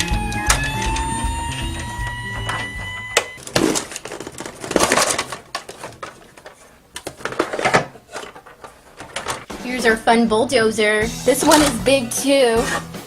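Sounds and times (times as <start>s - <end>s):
background music: 0.0s - 3.4s, 9.5s - 13.0s
plastic toys rustling and clattering: 0.0s - 9.7s, 11.3s - 12.0s, 12.6s - 13.0s.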